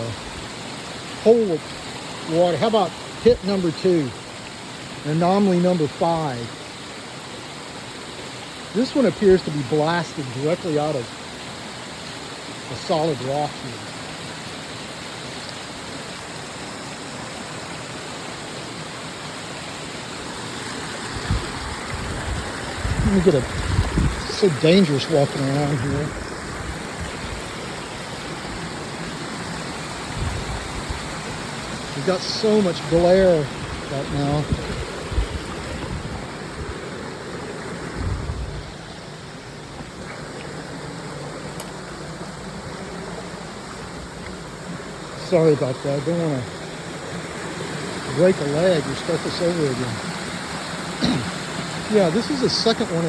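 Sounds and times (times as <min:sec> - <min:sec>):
water running over rock: 0:00.0 - 0:53.0
low rumble on microphone: 0:21.2 - 0:24.4, 0:37.9 - 0:38.9.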